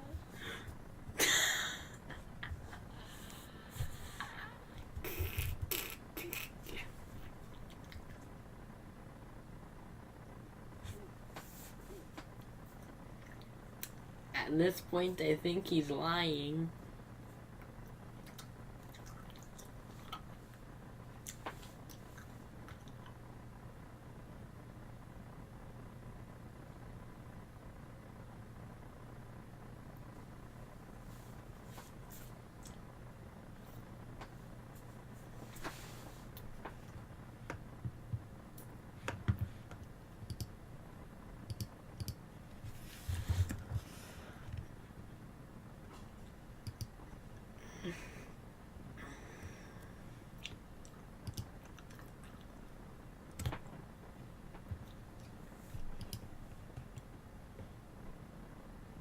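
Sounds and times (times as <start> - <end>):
steady low hum: 0.0 - 59.0
small clicks and ticks: 36.3 - 40.6, 41.4 - 42.2, 46.6 - 47.0, 50.4 - 52.5, 56.0 - 57.1.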